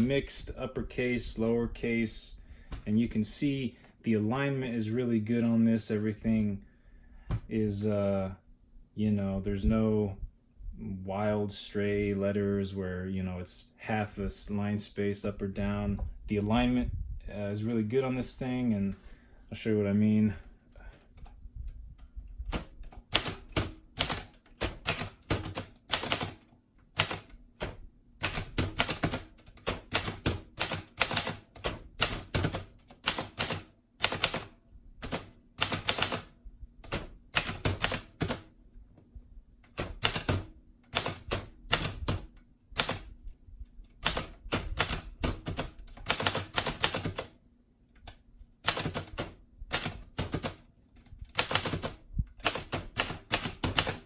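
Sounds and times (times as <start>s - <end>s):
typewriter keys clacking: 22.5s - 36.3s, 36.9s - 38.5s, 39.7s - 43.0s, 44.0s - 47.3s, 48.7s - 50.6s, 51.3s - 54.0s.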